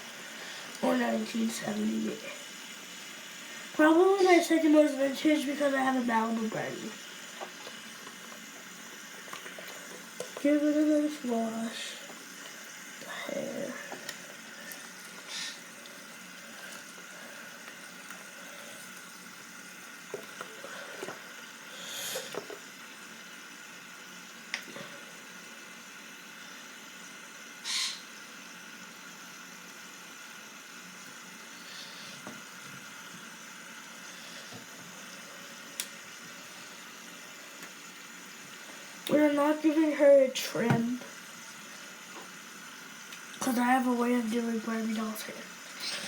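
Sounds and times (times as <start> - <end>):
tap water running into sink: 0.1 - 21.5, 34.4 - 46.0.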